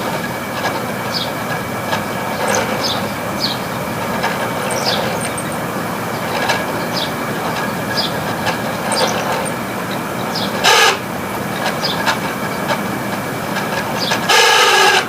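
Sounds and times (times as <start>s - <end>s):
air conditioner rumbling: 0.0s - 15.0s
fan blades chirping in water: 0.0s - 15.0s.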